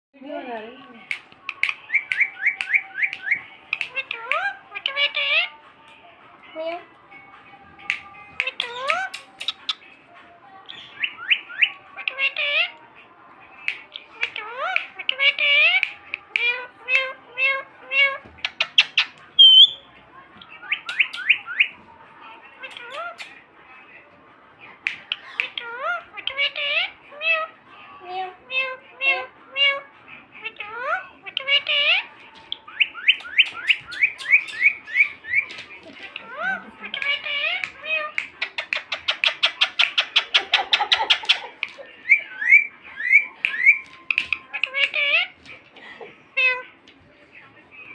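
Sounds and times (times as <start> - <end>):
parrot clicks: 1.1 - 4.5
parrot calling: 1.6 - 5.6, 10.7 - 12.8, 13.7 - 19.9, 25.0 - 27.5, 28.5 - 45.4.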